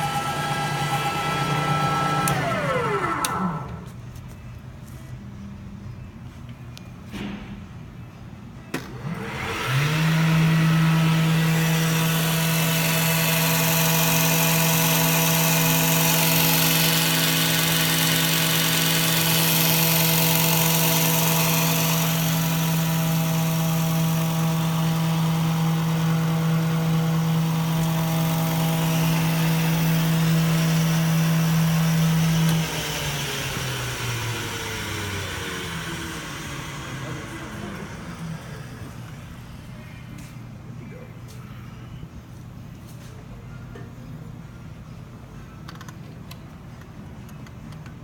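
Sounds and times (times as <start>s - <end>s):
grinder motor humming: 0.0s - 4.0s, 8.9s - 39.5s.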